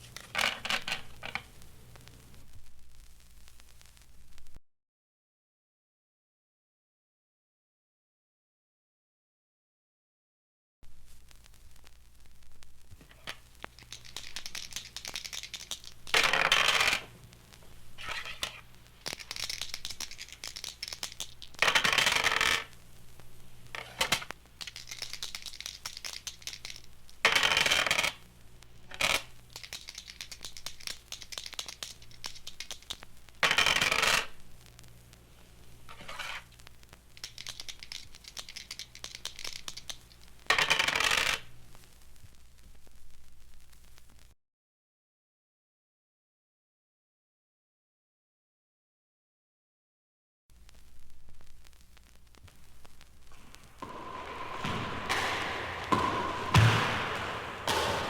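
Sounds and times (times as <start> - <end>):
small clicks and scratchy rustling: 0.0 - 4.6, 10.8 - 44.4, 50.5 - 56.2
steady low hum: 22.7 - 26.0.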